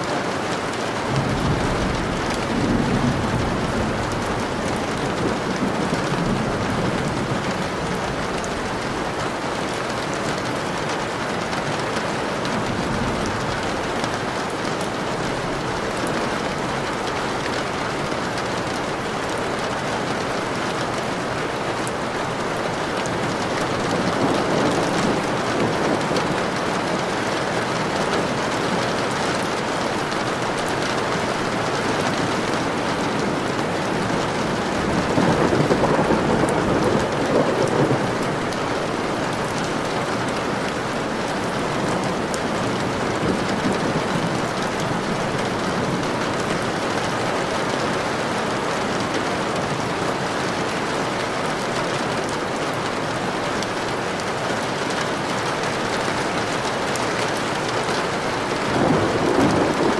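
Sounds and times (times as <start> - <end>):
steady rain: 0.0 - 59.9
thunder rolling: 1.0 - 9.4, 12.5 - 47.5, 57.9 - 59.9.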